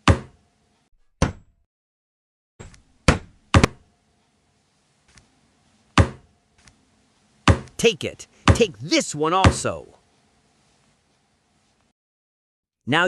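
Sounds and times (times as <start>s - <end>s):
cartoon hitting knocks: 0.0s - 0.4s, 1.2s - 1.6s, 3.0s - 3.8s, 6.0s - 6.2s, 7.5s - 7.8s, 8.5s - 8.8s, 9.4s - 9.7s.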